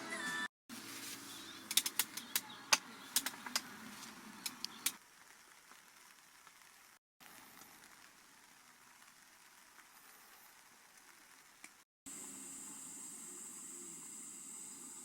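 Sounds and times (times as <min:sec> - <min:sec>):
music: 0:00.0 - 0:01.7
sharp irregular clicks and taps: 0:01.7 - 0:03.7.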